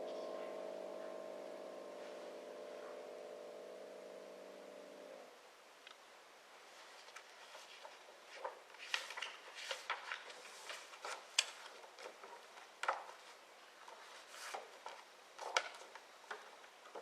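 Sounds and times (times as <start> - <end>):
rustling: 6.6 - 17.0.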